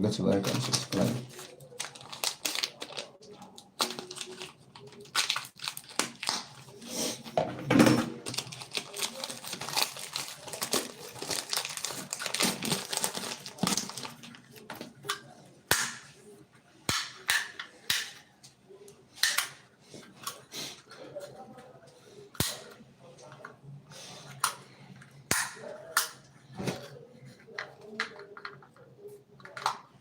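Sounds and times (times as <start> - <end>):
packaging crinkling and rustling: 0.3 - 6.8, 8.2 - 15.4.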